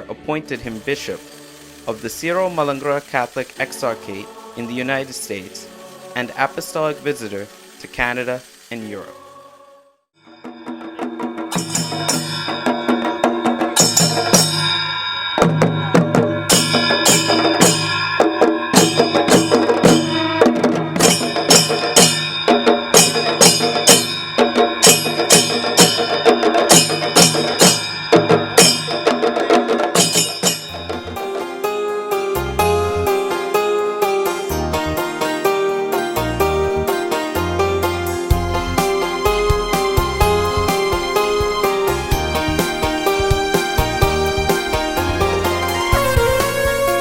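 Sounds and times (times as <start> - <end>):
instrumental music: 0.0 - 47.0
regular drum beat: 10.3 - 47.0.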